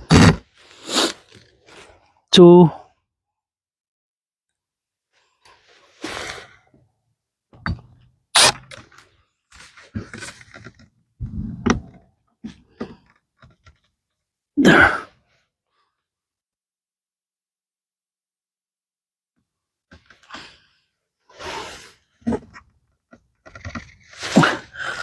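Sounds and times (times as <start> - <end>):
knocks and clunks on wood: 11.2 - 12.0.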